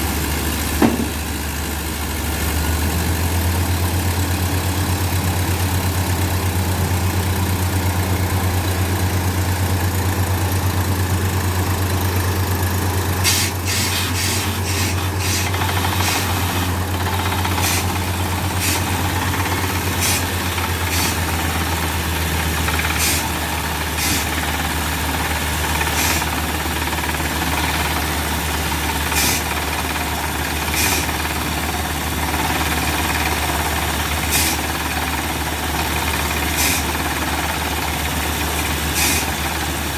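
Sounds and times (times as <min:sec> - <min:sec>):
drilling machine engine humming: 0:00.0 - 0:39.9
sharp knocks: 0:00.8 - 0:01.3.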